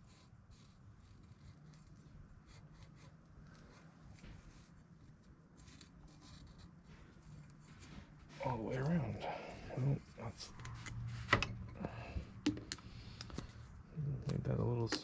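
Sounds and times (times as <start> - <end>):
marker scratching on metal pipe: 0.0 - 11.4.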